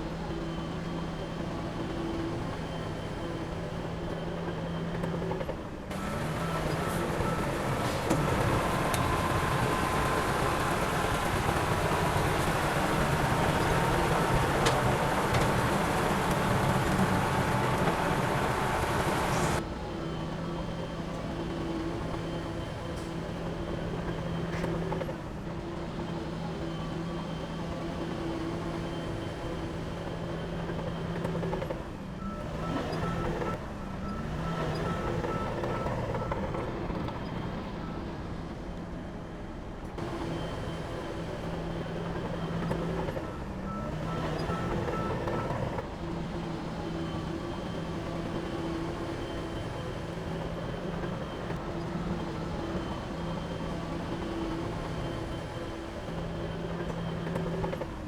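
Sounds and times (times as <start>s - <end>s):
heavy diesel engines running: 0.0s - 58.0s.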